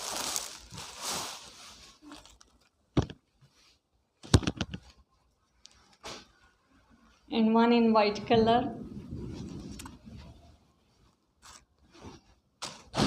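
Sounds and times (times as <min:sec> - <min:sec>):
plastic packaging crinkling: 0:00.0 - 0:02.8.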